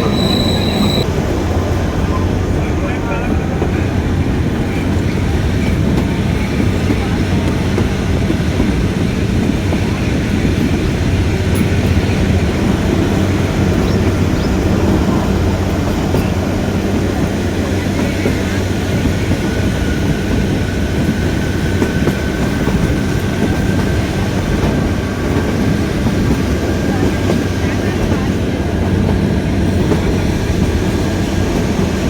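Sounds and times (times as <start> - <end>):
faint high squeal: 0.0 - 1.1
train carriage rumbling and rattling: 0.0 - 32.0.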